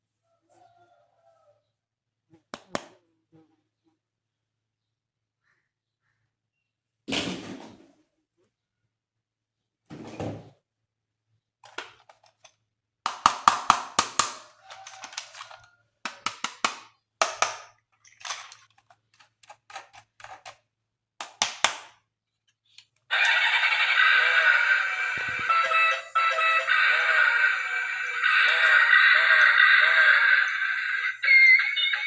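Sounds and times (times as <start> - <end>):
plastic parts clicking and knocking: 11.6 - 23.0
toy electronic sound effect: 23.1 - 32.0.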